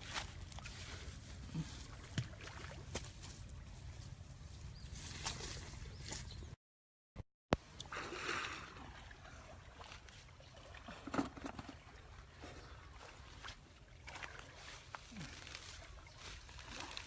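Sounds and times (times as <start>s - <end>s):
water splashing and trickling: 0.0s - 6.2s, 7.6s - 17.0s.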